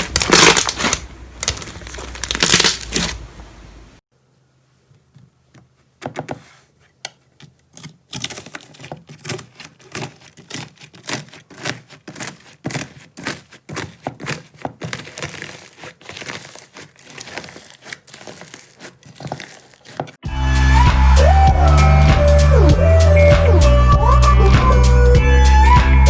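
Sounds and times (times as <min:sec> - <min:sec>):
slime crackling and popping: 0:00.0 - 0:03.2, 0:09.2 - 0:20.2
loud music: 0:20.2 - 0:26.0.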